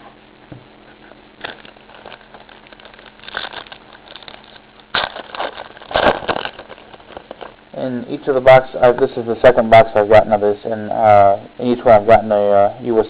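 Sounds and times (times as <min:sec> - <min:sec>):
wrappers and cards crinkling: 0:01.4 - 0:07.6.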